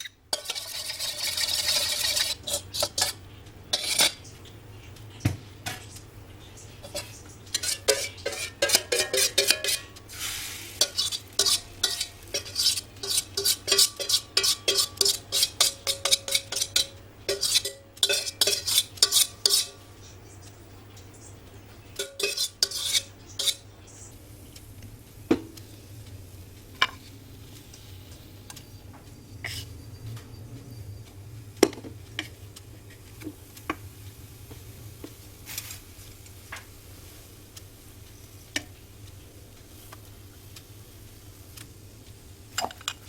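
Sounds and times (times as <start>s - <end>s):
utensil stirring in a bowl: 0.3s - 4.2s, 6.8s - 19.8s, 22.0s - 23.6s
utensil tapping bowl: 6.8s - 10.0s, 10.8s - 19.7s.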